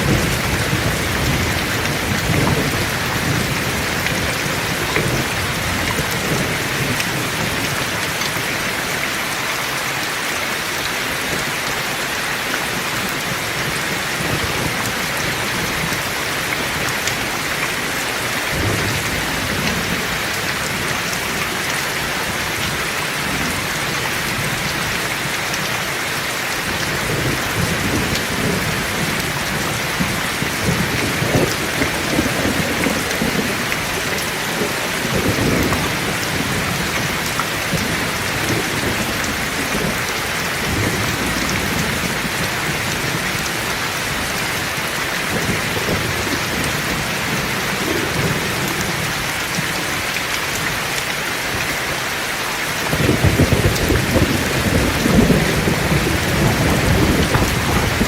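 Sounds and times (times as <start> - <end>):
low thunder rumbling: 0.0 - 8.0, 26.7 - 44.4, 52.8 - 58.0
heavy rain falling: 0.0 - 58.0.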